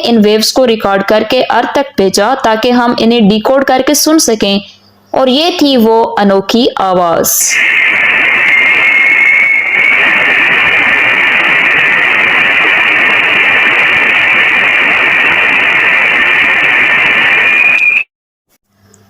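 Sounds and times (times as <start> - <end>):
loud steady hiss: 7.4 - 18.1.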